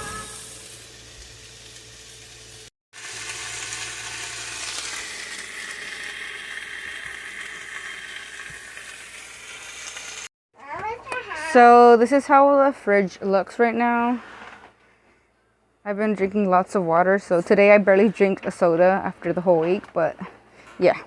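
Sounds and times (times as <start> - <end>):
steak and onions sizzling in a pan: 0.0 - 10.3.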